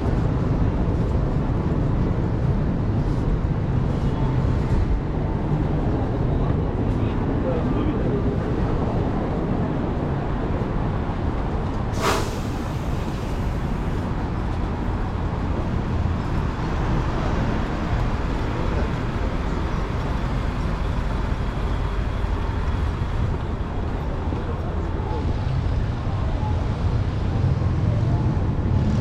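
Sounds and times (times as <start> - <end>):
street traffic rumble: 0.0 - 29.0
short sharp hiss: 11.9 - 13.4.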